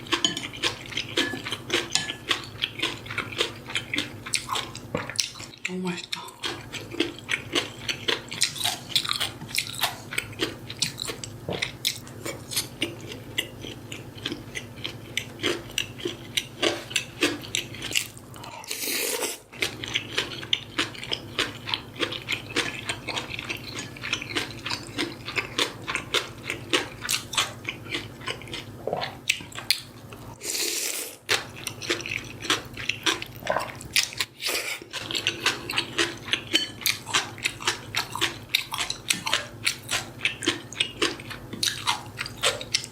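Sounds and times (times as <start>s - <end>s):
wet chewing and crunching: 0.0s - 42.9s.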